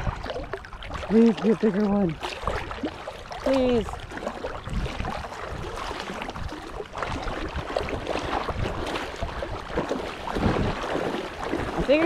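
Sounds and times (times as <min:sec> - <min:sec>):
shallow water splashing: 0:00.0 - 0:12.0
wind rumble on microphone: 0:00.0 - 0:12.0.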